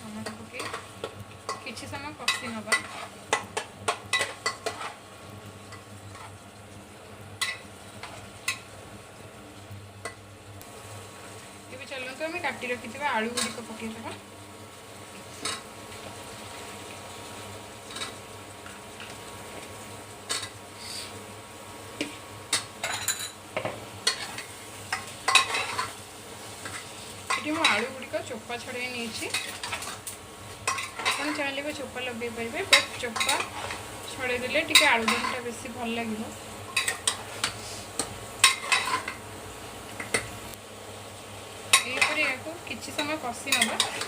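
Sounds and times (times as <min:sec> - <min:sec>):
food sizzling in a pan: 0:00.0 - 0:44.0
metal spoon scraping a pot: 0:02.3 - 0:03.1, 0:04.1 - 0:05.0.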